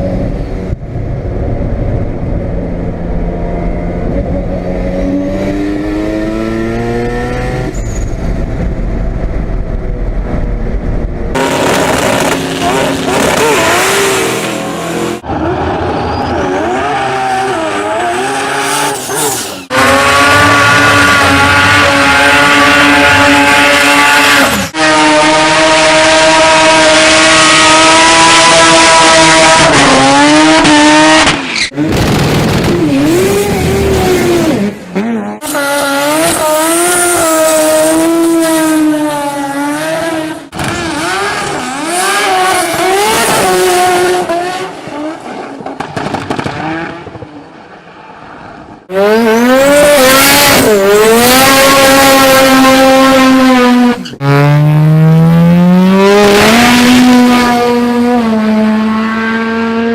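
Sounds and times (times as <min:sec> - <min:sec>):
car engine revving high: 0:04.0 - 0:07.7, 0:11.3 - 0:45.2, 0:48.9 - 0:59.9.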